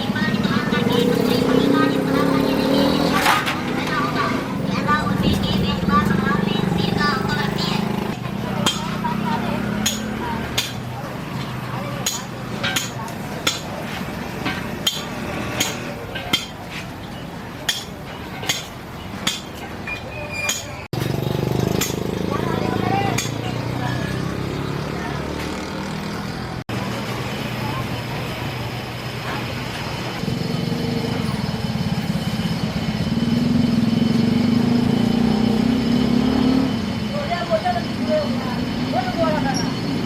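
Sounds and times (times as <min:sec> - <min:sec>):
engine running: 0:00.0 - 0:17.6, 0:20.9 - 0:40.0
low workshop background: 0:09.8 - 0:22.0.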